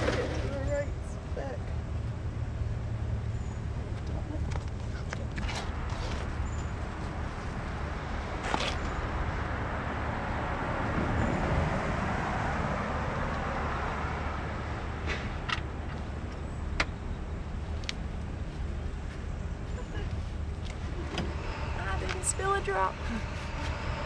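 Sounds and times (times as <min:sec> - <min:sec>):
street traffic noise: 0:00.0 - 0:24.0
vehicle passing: 0:20.2 - 0:24.0.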